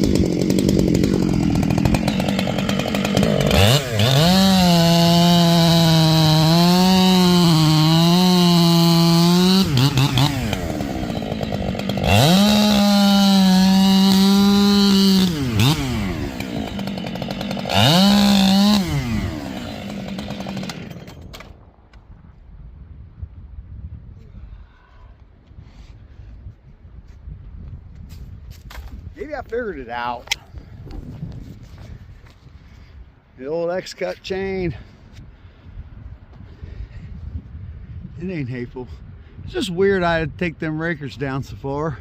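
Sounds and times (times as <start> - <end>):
chainsaw revving and cutting wood: 0.0 - 21.6.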